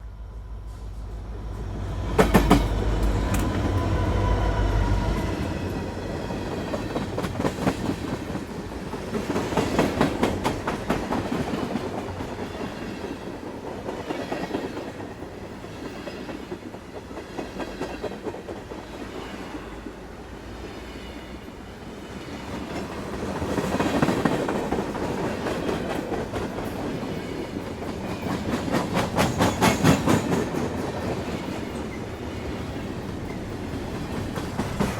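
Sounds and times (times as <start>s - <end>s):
train rumble: 0.0s - 34.9s
train wheels clacking over joints: 22.4s - 34.9s.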